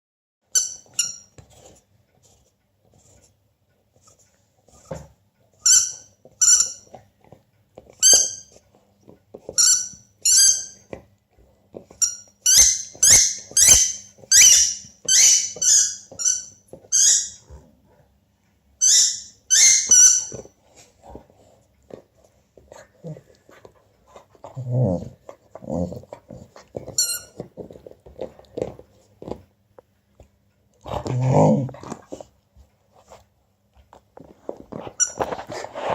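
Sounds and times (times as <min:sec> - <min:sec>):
squeaky dog toy squeaks: 0:00.5 - 0:01.4, 0:05.6 - 0:07.0, 0:07.9 - 0:08.6, 0:09.5 - 0:10.9, 0:11.9 - 0:17.5, 0:18.8 - 0:20.5, 0:26.9 - 0:27.5, 0:35.0 - 0:35.3.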